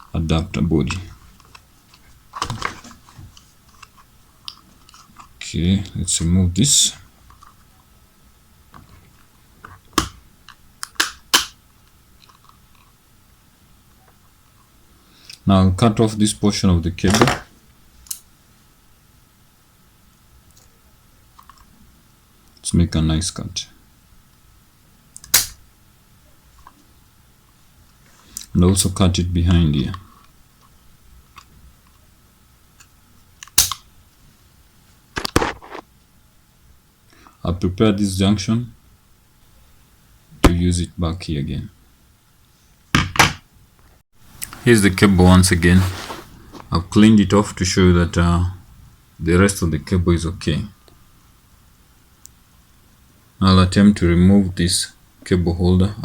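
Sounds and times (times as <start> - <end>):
plastic clicks and snaps: 10.0 - 11.6, 25.2 - 25.6, 32.8 - 33.9
cutting tool snipping cable: 25.2 - 25.6.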